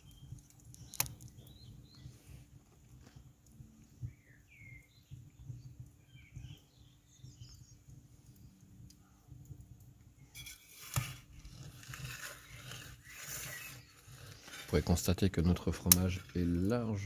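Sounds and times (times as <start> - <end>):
rattling scraping noise: 10.4 - 17.0.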